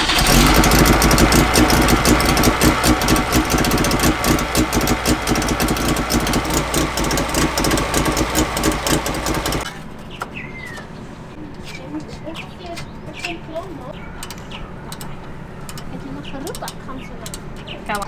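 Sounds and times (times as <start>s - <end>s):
two-stroke car engine running: 0.0s - 9.7s.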